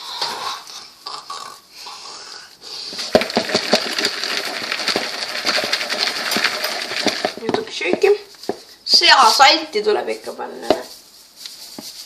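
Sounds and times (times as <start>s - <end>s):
popcorn rattling in container: 2.8s - 8.3s
salt shaken onto popcorn: 3.0s - 8.2s.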